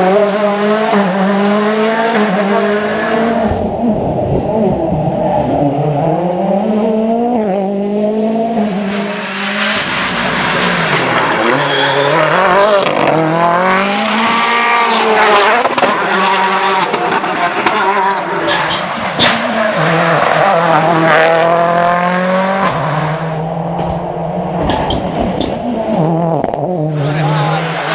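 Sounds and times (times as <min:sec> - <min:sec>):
rally car engine revving: 0:00.0 - 0:27.9.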